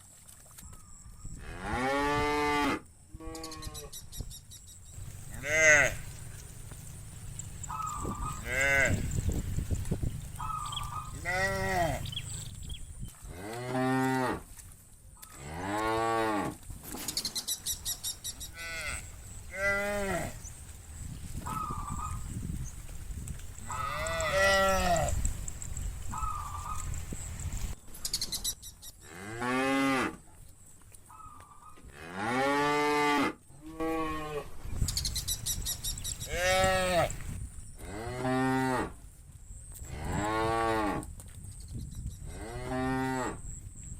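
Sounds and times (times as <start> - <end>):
cows mooing: 5.0 - 9.6, 10.2 - 12.5, 18.5 - 20.5, 23.6 - 25.3, 36.2 - 38.9.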